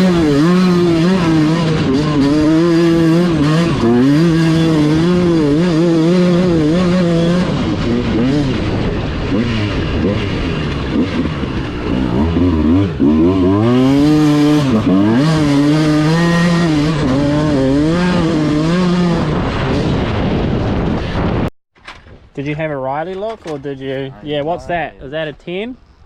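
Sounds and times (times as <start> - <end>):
motorcycle engine revving: 0.0 - 21.5.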